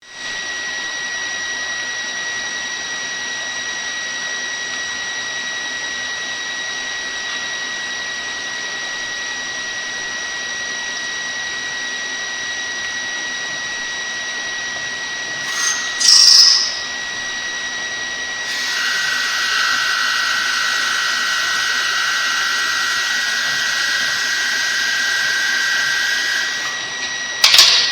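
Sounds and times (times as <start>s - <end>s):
machine whining: 13.8s - 27.9s.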